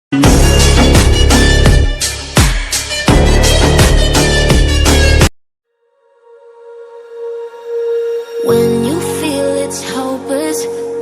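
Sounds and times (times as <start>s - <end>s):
pounding kick drum: 0.2s - 4.8s
loud electronic music: 0.2s - 5.3s.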